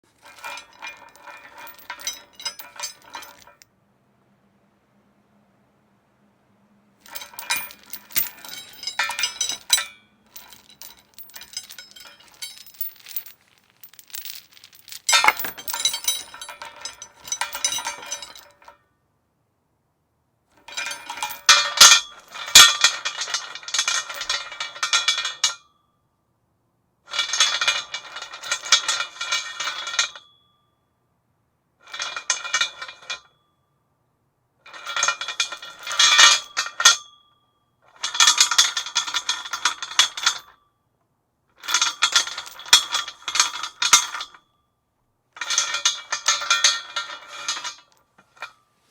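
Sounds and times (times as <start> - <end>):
metal chain rattling against post: 0.2 - 3.6, 7.1 - 18.7.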